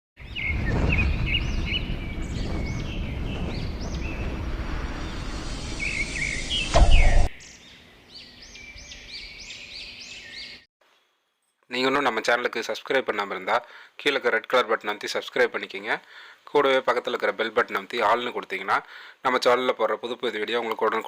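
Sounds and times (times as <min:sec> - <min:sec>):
cage birds chirping: 0:00.2 - 0:10.6
low rumble: 0:00.5 - 0:07.3.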